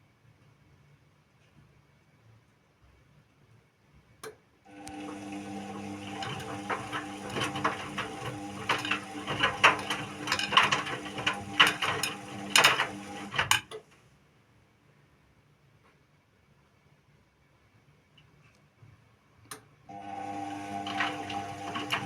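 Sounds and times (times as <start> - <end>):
washing machine motor humming: 4.7 - 13.7, 19.9 - 22.0.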